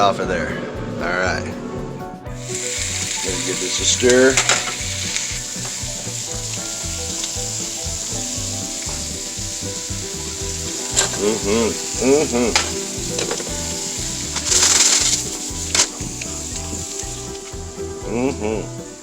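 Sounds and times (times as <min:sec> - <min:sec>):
food sizzling in a pan: 0:02.4 - 0:19.0
utensil knocking against pan: 0:02.8 - 0:17.1.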